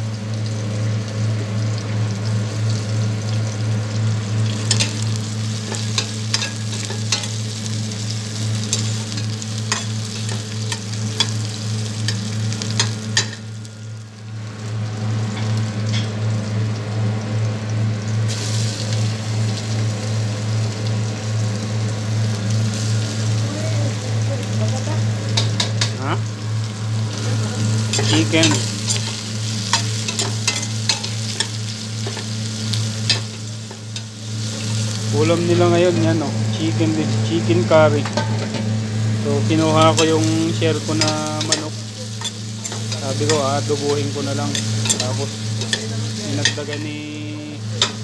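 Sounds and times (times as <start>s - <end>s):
food sizzling in hot oil: 0.0s - 48.0s
steady low hum: 0.0s - 48.0s
utensil stirring against pan: 27.3s - 34.8s, 39.6s - 46.8s.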